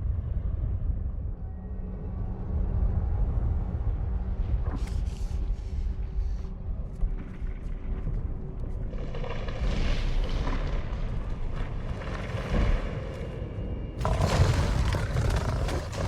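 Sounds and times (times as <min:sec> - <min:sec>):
deep rumbling and booming: 0:14.0 - 0:16.0.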